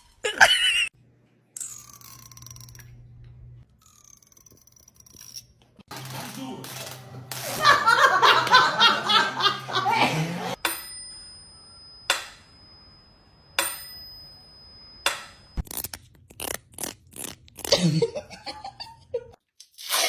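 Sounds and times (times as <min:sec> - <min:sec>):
person laughing: 0:00.2 - 0:00.9, 0:07.4 - 0:10.6, 0:17.7 - 0:19.4.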